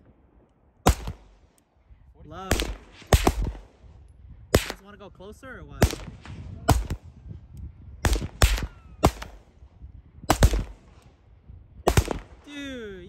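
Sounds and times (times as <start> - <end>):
handgun shots: 4.6 - 4.8, 8.0 - 9.4, 10.3 - 10.8.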